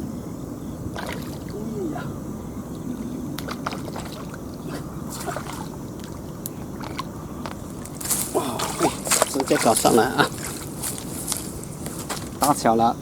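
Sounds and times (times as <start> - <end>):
water sloshing and splashing: 0.9 - 1.6, 3.0 - 12.4.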